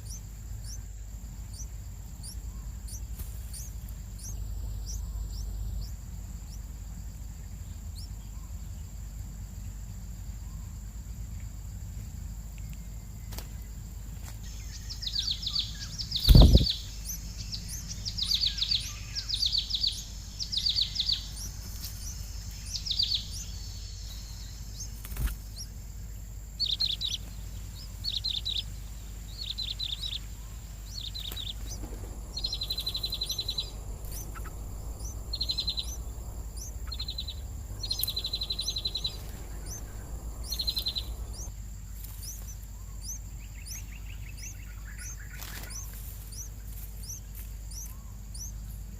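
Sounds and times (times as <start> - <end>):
nestlings begging chirps: 0.0 - 8.8, 13.2 - 48.9
loud thump: 16.2 - 16.7.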